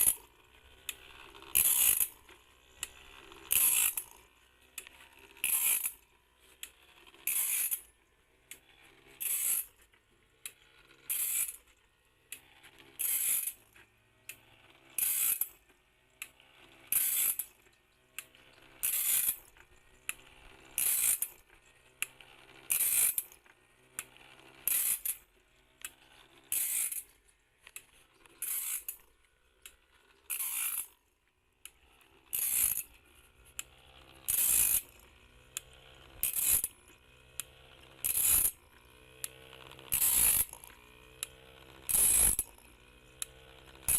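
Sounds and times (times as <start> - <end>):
high grinding strokes: 1.3 - 2.3, 32.3 - 33.2, 34.3 - 36.9, 41.9 - 42.6
mechanical feed clicking: 16.2 - 25.2.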